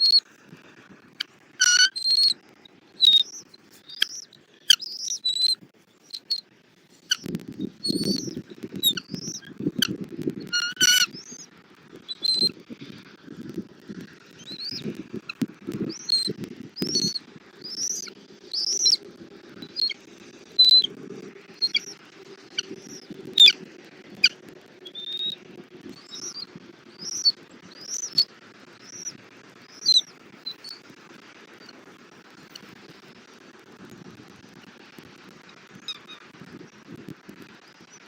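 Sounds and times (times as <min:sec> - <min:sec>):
eagle chirping calls: 0:01.6 - 0:02.4, 0:03.0 - 0:06.4, 0:07.1 - 0:09.5, 0:10.5 - 0:11.4, 0:12.1 - 0:12.5, 0:14.4 - 0:14.8, 0:15.9 - 0:19.0, 0:21.6 - 0:21.9, 0:27.0 - 0:28.2, 0:29.7 - 0:30.0.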